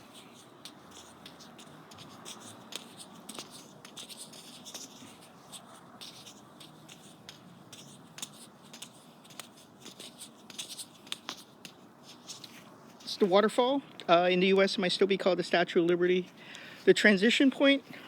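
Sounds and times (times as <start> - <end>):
juggling balls clicking: 0.0 - 13.3
scratchy rustling: 0.0 - 13.8.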